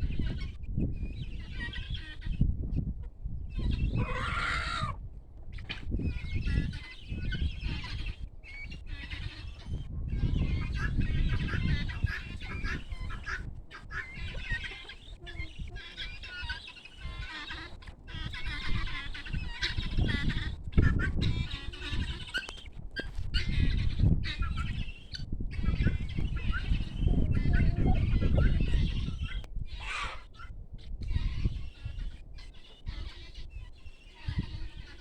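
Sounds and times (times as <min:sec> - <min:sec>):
small birds chirping: 0:00.0 - 0:02.9, 0:03.5 - 0:35.0
chickens clucking: 0:01.2 - 0:35.0.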